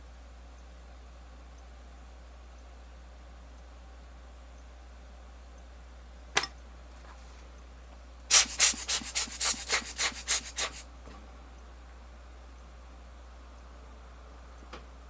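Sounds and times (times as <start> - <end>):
rubbing strokes: 8.3 - 10.8
short scrape: 8.3 - 10.8.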